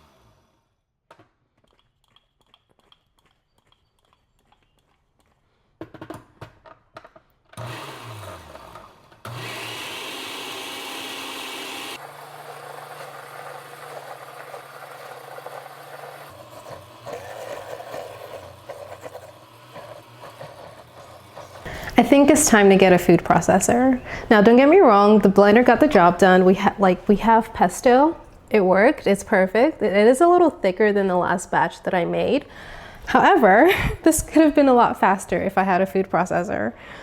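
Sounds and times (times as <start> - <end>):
blender motor blending: 0.0 - 0.7, 7.5 - 22.7
blender clicks: 7.5 - 18.4.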